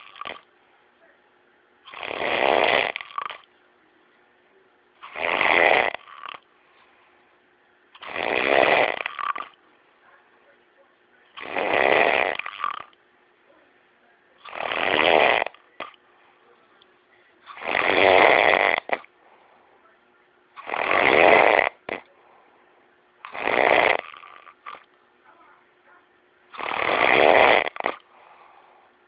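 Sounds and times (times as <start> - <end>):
man snoring: 0.0 - 0.4, 1.9 - 3.5, 5.0 - 6.4, 8.0 - 9.6, 11.4 - 12.9, 14.4 - 15.9, 17.5 - 19.1, 20.6 - 22.1, 23.2 - 24.8, 26.5 - 28.0
quiet breaths: 0.0 - 2.0, 5.8 - 20.7, 21.3 - 26.6, 27.3 - 29.0.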